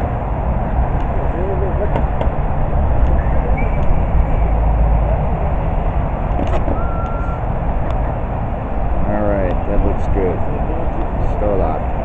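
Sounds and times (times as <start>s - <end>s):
low outdoor rumble: 0.0s - 12.0s.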